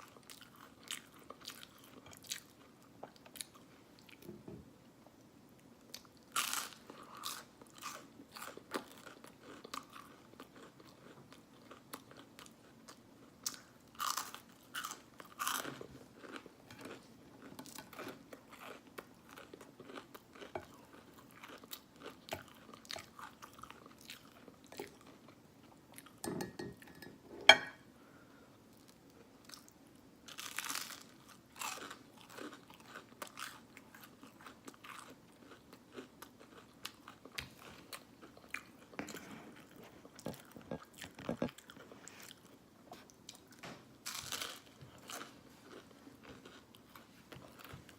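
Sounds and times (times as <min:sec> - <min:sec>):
wet chewing and crunching: 0:05.9 - 0:26.2, 0:30.3 - 0:43.5.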